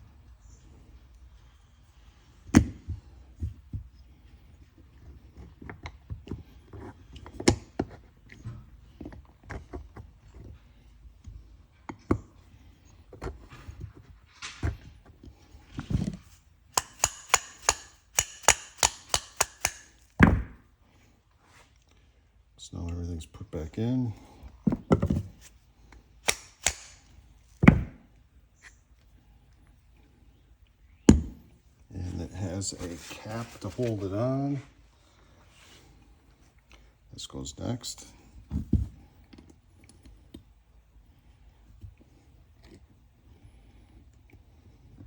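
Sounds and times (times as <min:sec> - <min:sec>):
ringing metallic clicks: 0:16.8 - 0:20.0
metal parts knocking and clicking: 0:16.8 - 0:20.6.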